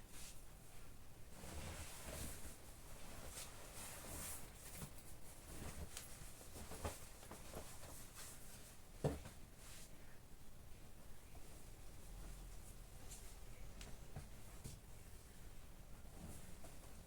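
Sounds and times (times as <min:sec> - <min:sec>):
clothes rustling: 0:01.3 - 0:09.9.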